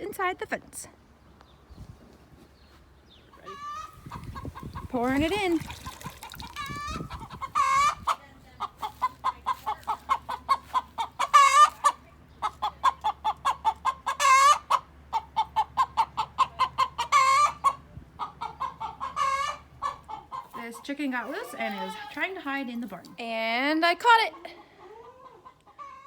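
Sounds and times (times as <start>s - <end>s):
chicken clucking: 3.3s - 5.5s, 6.6s - 22.2s, 24.3s - 26.0s
chicken squawking: 3.3s - 22.1s, 24.6s - 26.0s.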